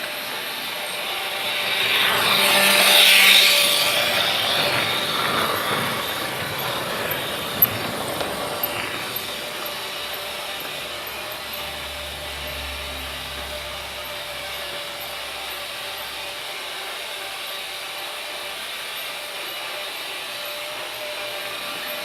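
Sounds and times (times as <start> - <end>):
freight train rumbling: 0.0 - 22.0
faint steady tone: 7.7 - 17.7.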